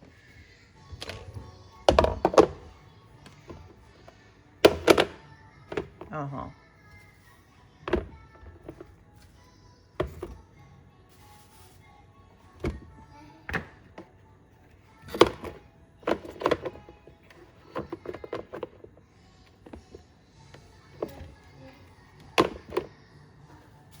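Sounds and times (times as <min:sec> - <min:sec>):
knocks and clunks in metal pot: 0:01.0 - 0:02.7, 0:04.6 - 0:06.1, 0:22.2 - 0:22.9.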